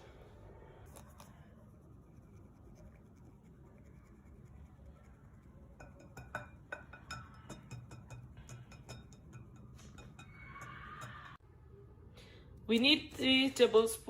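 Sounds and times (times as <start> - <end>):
utensils clinking against bowl: 5.8 - 11.4.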